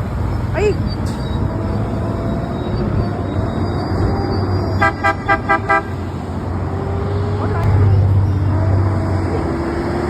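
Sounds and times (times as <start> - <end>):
passing traffic rumble: 0.0 - 10.0
vehicle horn beeps: 4.8 - 6.0.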